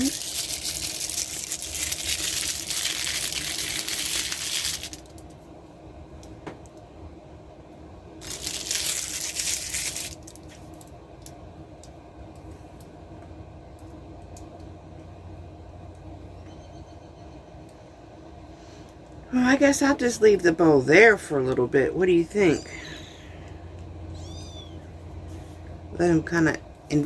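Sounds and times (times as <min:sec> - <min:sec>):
dry kibble rattling into a bowl: 0:00.0 - 0:05.2, 0:08.2 - 0:10.8.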